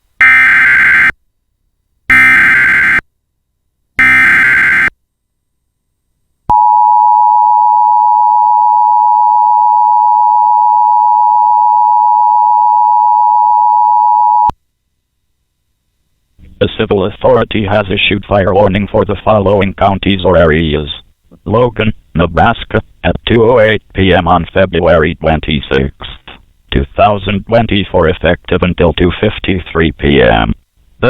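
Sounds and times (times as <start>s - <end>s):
digital header data bursts: 4.0s - 4.9s
two-tone attention signal: 4.0s - 4.9s.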